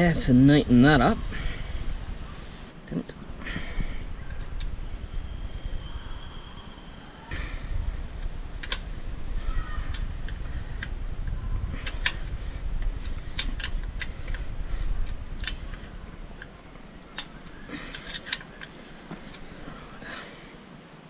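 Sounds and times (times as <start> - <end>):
low rumble: 0.0 - 20.1
hand tools clicking on metal: 15.0 - 19.8.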